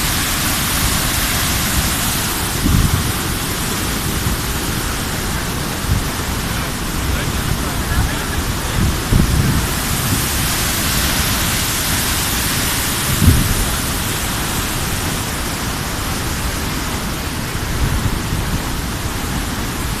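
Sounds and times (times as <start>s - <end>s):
waterfall roaring: 0.0s - 20.0s
low thumps: 13.1s - 14.0s.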